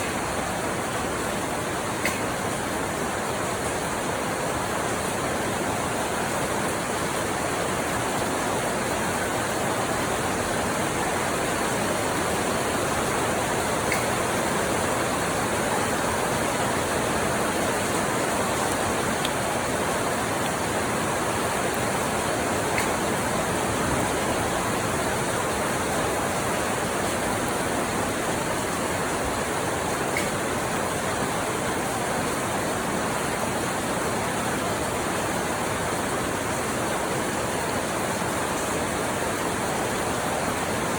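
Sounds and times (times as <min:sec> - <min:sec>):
steady rain: 0:00.0 - 0:40.9
raindrop ticks: 0:02.0 - 0:02.4, 0:13.6 - 0:15.2, 0:18.6 - 0:19.5, 0:22.5 - 0:24.5, 0:30.0 - 0:30.6.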